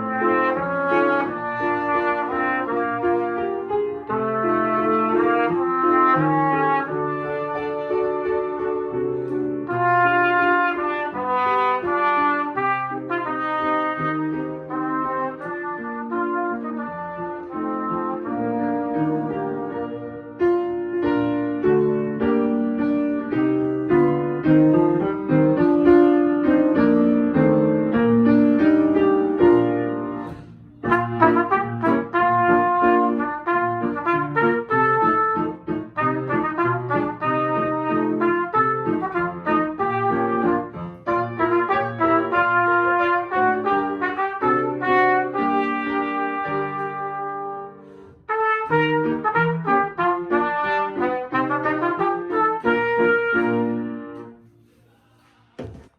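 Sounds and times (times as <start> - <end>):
trumpet solo: 0.0 - 9.0, 9.7 - 21.2, 29.3 - 54.4
piano accompaniment: 0.0 - 55.9.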